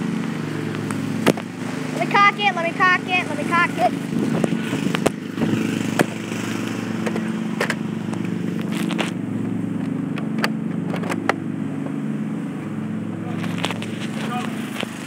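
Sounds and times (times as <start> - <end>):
motor engine running: 0.0 - 15.0
sharp clicks and knocks: 7.0 - 9.2, 9.8 - 12.0.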